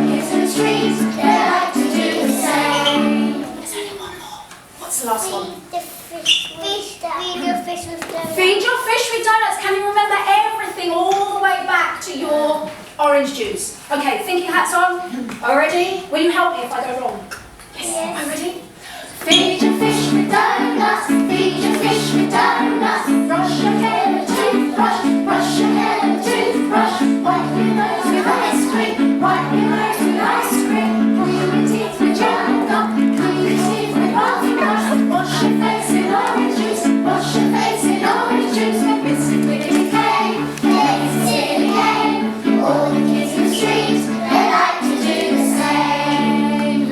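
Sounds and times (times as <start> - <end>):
young children singing: 0.0 - 4.4, 18.2 - 46.9
woman singing: 19.2 - 40.0
repeating instrumental accompaniment: 19.4 - 46.8.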